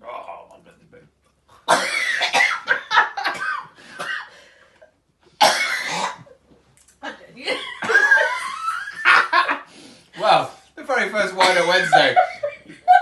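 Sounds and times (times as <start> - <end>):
person coughing hard: 1.7 - 4.3, 5.4 - 6.3, 11.4 - 12.1.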